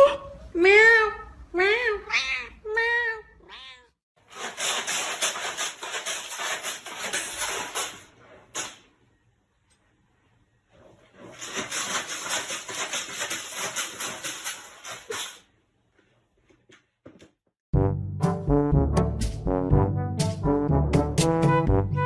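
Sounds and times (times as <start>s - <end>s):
cat meowing: 2.0s - 4.0s.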